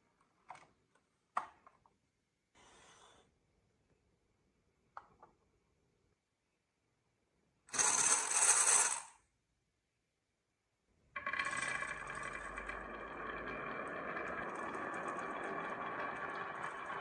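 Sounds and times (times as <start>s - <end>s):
marbles clattering: 7.7s - 9.1s, 11.2s - 17.0s
marbles rolling down track: 7.7s - 9.2s, 11.2s - 17.0s.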